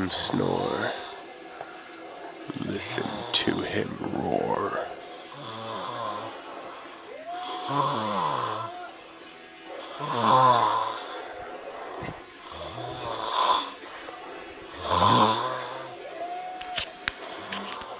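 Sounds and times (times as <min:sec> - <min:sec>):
man snoring heavily: 0:00.0 - 0:01.3, 0:02.5 - 0:06.5, 0:07.4 - 0:08.8, 0:09.7 - 0:13.8, 0:14.7 - 0:16.0, 0:17.2 - 0:17.9.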